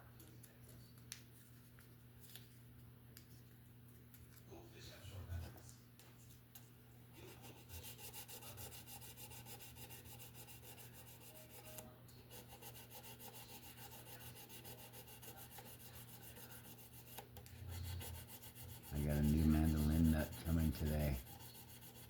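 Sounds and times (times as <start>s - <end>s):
hand sanding wood: 7.2s - 22.0s.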